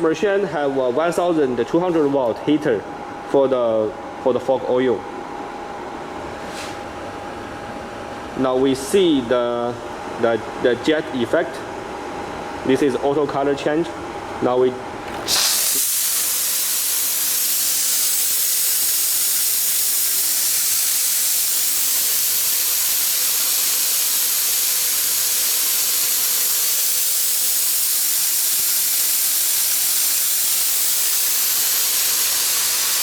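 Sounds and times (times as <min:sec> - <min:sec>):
fog machine hissing: 0:15.1 - 0:33.0.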